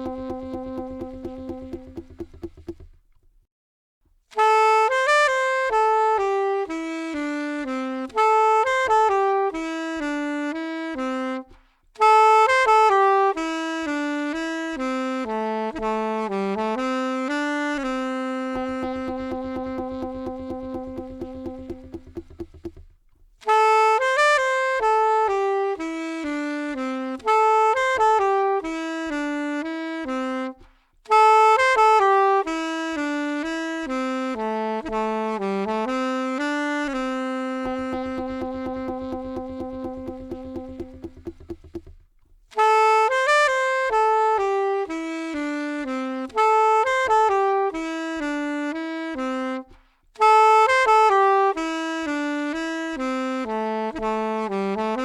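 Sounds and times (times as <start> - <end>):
saxophone slow melody: 0.0 - 3.0, 4.3 - 55.0
faint low regular beat: 0.0 - 3.2, 18.5 - 23.4, 36.8 - 42.6.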